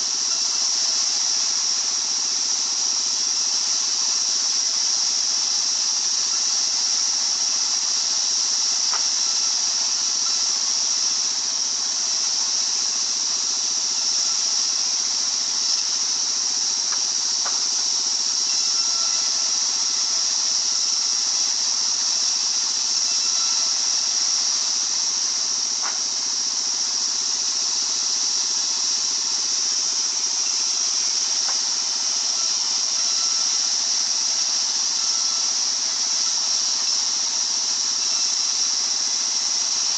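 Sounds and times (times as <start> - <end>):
circular saw running: 0.0 - 39.9
faint ticks: 16.9 - 17.6.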